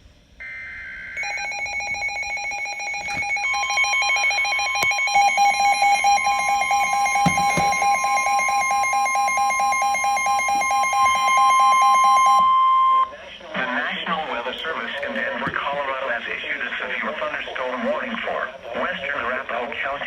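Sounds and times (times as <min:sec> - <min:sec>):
digital header tones: 0:00.4 - 0:13.1
steady weather radio warning tone: 0:00.4 - 0:20.0
fast-pulsing electronic alarm beep: 0:00.5 - 0:13.1.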